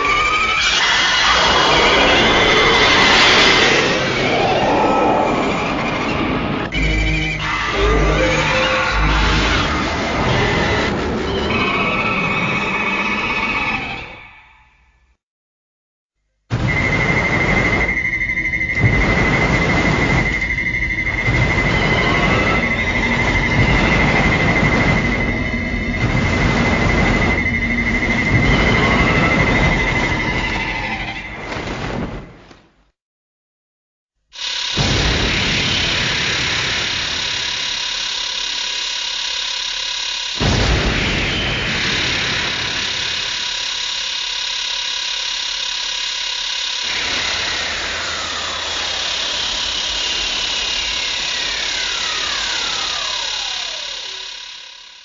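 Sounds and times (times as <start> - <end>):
loud dense rumbling: 1.0 - 12.1, 16.6 - 31.0
high whistle: 16.6 - 31.2.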